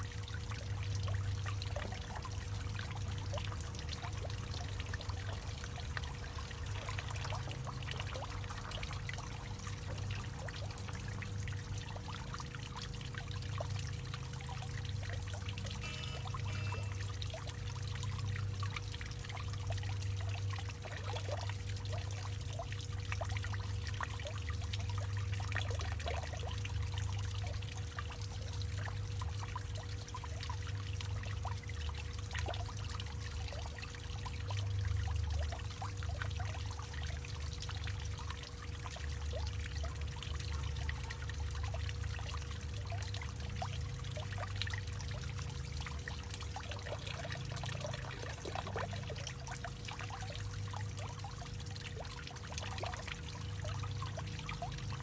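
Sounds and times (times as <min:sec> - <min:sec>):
water pouring and trickling: 0:00.0 - 0:55.0
small splashes: 0:40.6 - 0:55.0.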